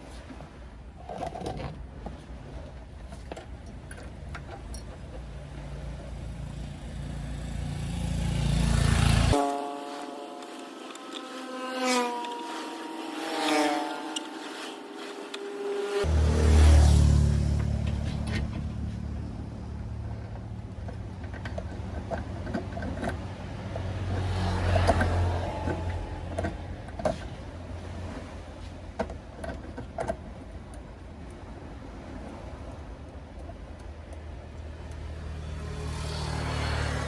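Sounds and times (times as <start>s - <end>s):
short gliding tone: 9.0s - 19.4s.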